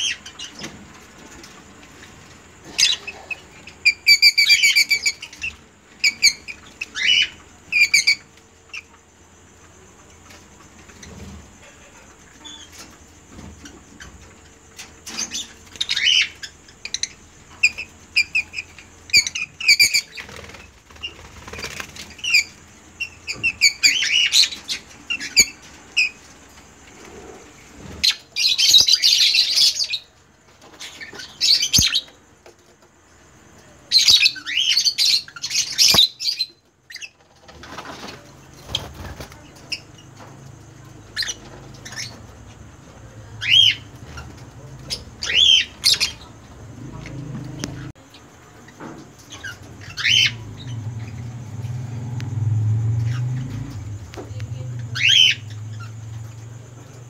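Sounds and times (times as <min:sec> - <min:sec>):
lovebirds chirping: 0:00.0 - 0:09.2, 0:10.6 - 0:26.9, 0:27.8 - 0:32.2, 0:33.6 - 0:57.0
wing flapping: 0:20.0 - 0:22.3.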